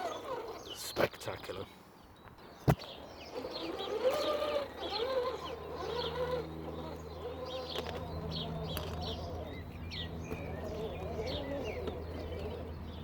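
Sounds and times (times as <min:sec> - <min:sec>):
steady low hum: 0:01.6 - 0:13.0
bird cooing calls: 0:03.3 - 0:12.6.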